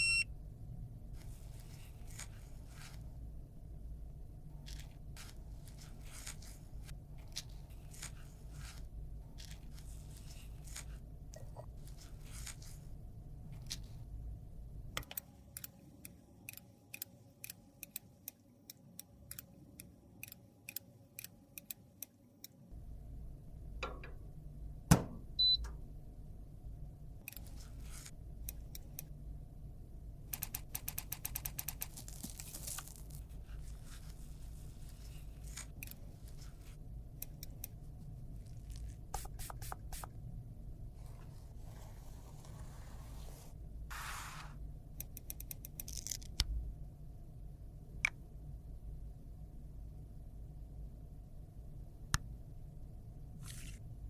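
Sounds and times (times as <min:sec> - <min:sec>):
brief high beep: 0:00.0 - 0:00.3.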